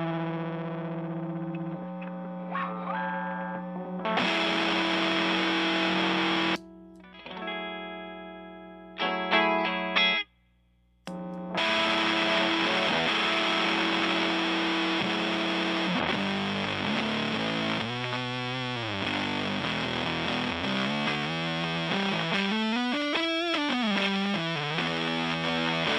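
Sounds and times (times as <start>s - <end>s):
fuzz-distorted electric guitar: 0.0s - 10.3s, 11.1s - 25.9s.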